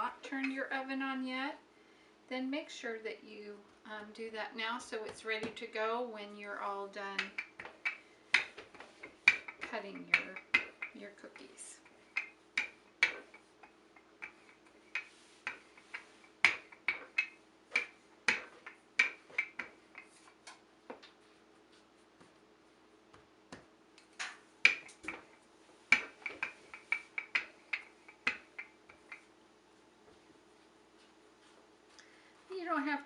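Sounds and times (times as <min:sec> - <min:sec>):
faint steady hum: 0:00.0 - 0:33.0
rolling pin clicking on dough: 0:07.2 - 0:20.6, 0:23.5 - 0:29.3.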